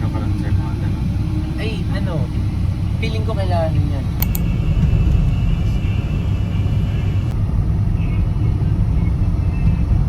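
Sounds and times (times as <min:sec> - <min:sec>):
road vehicle rumble: 0:00.0 - 0:10.0
sharp clicks: 0:04.2 - 0:04.5.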